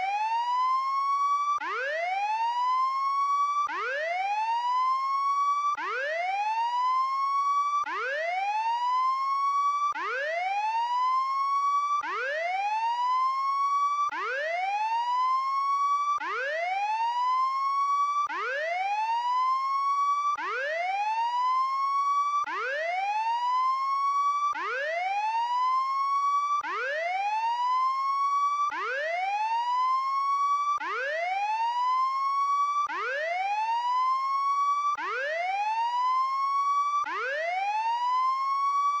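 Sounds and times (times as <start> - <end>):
electronic whooping siren: 10.0 - 39.0.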